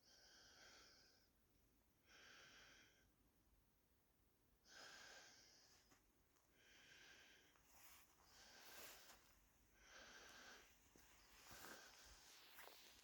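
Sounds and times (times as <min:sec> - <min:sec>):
person breathing slowly: 0:00.0 - 0:01.4, 0:02.0 - 0:03.2, 0:04.6 - 0:13.0.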